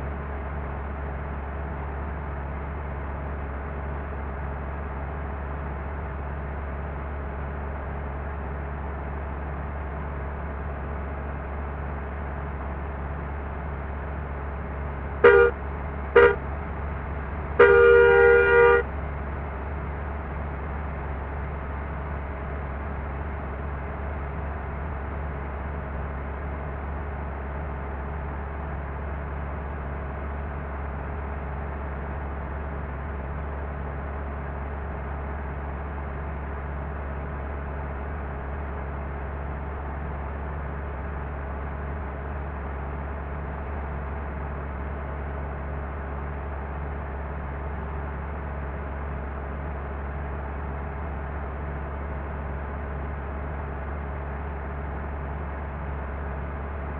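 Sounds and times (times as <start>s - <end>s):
bus engine rumble: 0.0s - 56.9s
bus horn blast: 15.2s - 16.5s, 17.6s - 18.9s.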